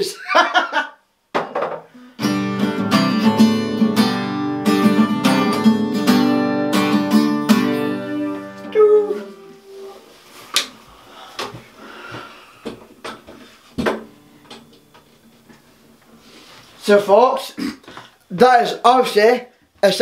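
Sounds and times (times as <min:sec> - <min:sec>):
guitar strumming chords: 0:02.2 - 0:10.1.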